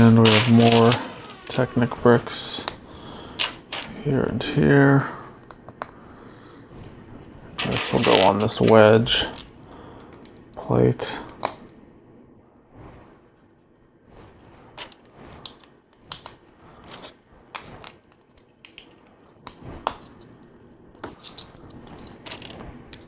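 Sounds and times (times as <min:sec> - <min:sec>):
plastic bricks clicking: 0:00.0 - 0:01.8.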